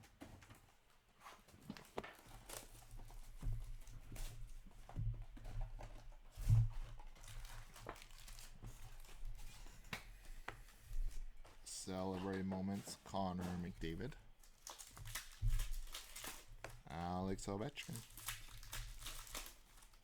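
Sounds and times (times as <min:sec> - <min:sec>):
cards rustling and clicking: 0:07.2 - 0:20.0.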